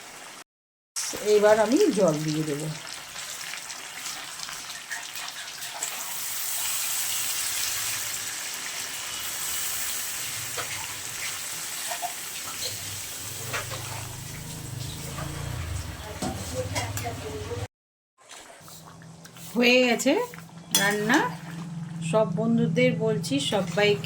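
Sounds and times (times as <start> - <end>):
chicken frying in oil: 1.0 - 17.7
water poured into frying pan: 2.1 - 15.9.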